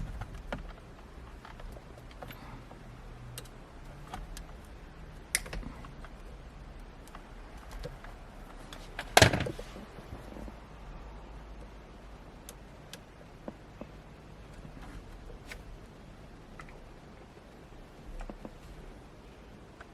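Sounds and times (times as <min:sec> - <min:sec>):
light clicks and knocks: 0:00.0 - 0:10.6.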